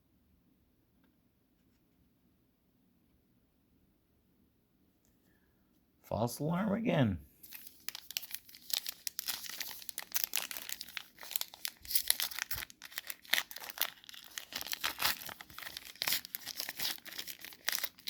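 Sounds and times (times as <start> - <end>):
wrapper and cards crinkling: 7.4 - 18.0.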